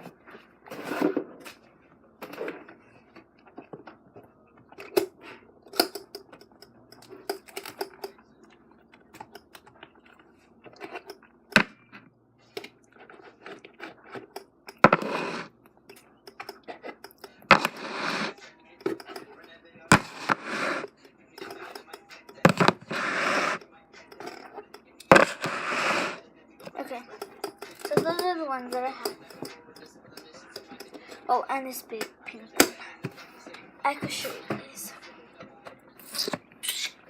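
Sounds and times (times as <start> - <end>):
plastic toys clicking and tapping: 4.8 - 8.2, 15.8 - 17.8, 18.8 - 22.9, 27.2 - 31.2.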